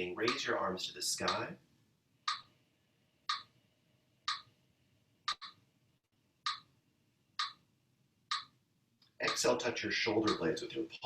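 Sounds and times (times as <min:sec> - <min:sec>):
metronome ticking: 0:00.2 - 0:00.6, 0:01.2 - 0:01.5, 0:02.3 - 0:02.5, 0:03.3 - 0:03.5, 0:04.3 - 0:04.5, 0:05.3 - 0:05.5, 0:06.5 - 0:06.7, 0:07.4 - 0:07.6, 0:08.3 - 0:08.5, 0:09.2 - 0:09.6, 0:10.2 - 0:10.7
sharp click: 0:05.3 - 0:05.6.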